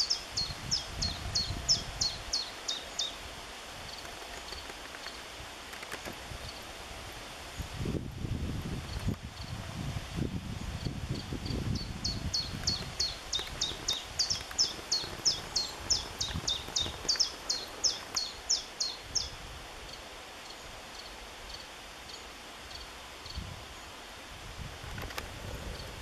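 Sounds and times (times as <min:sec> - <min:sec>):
light wind rustle: 0:00.0 - 0:26.0
songbird singing quick notes: 0:10.8 - 0:19.4
faint distant bird notes: 0:10.8 - 0:24.1.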